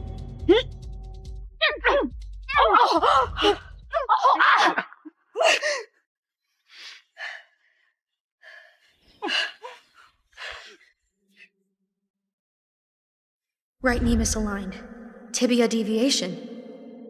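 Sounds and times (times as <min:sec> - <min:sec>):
people grunting and crying out: 0:01.6 - 0:05.8.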